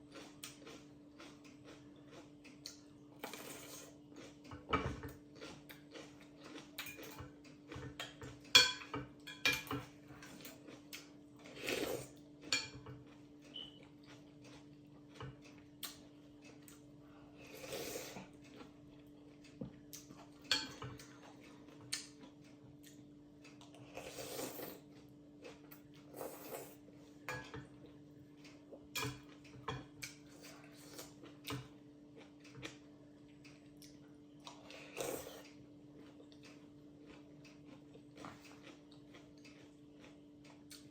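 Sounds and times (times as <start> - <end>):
chewing: 0.0 - 8.6, 9.8 - 40.9
faint steady hum: 0.0 - 40.9
cutlery clinking against a bowl: 3.2 - 5.3, 6.5 - 16.0, 19.5 - 21.1, 27.2 - 27.8, 28.9 - 30.5.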